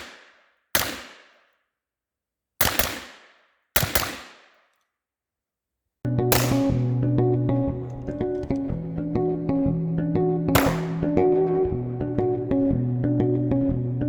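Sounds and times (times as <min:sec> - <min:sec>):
rifle shots echoing: 0:00.8 - 0:01.3, 0:02.6 - 0:04.5, 0:06.3 - 0:07.0, 0:10.6 - 0:11.2
guitar and bass music: 0:06.1 - 0:14.0.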